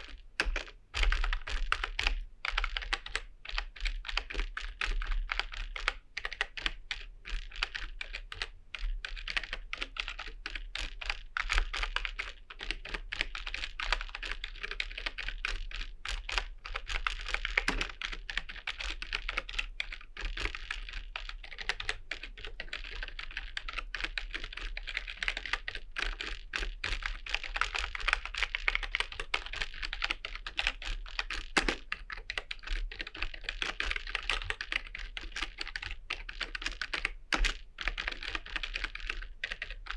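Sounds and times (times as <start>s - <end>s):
fast typing on keyboard: 0.0s - 39.9s.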